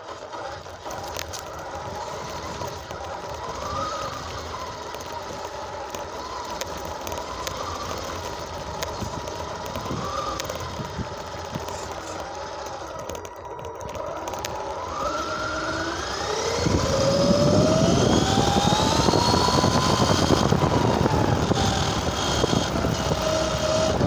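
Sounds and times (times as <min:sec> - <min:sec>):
radio-controlled car motor whine: 0:00.0 - 0:24.0
clicks: 0:04.3 - 0:15.3
rough rumble: 0:14.8 - 0:24.0.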